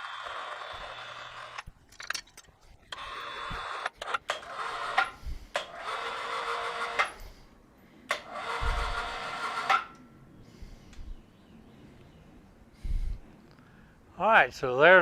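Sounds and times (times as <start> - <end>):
winch whirring: 0.0 - 7.5, 8.1 - 10.1.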